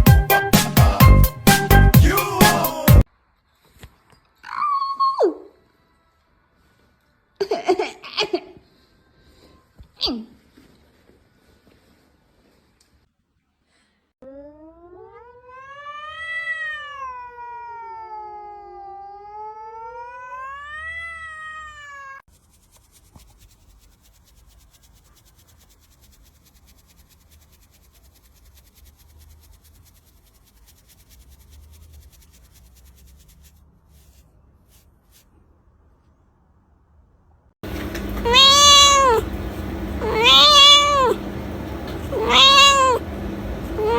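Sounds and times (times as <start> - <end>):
cat yowling: 14.2 - 22.2, 38.2 - 39.3, 40.0 - 41.2, 42.0 - 43.0, 43.6 - 43.9.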